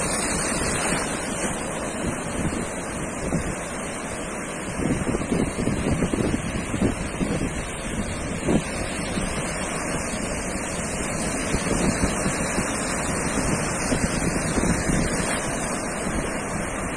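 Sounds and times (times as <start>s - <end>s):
surf washing onto beach: 0.0s - 16.9s
wind buffeting microphone: 0.0s - 16.9s.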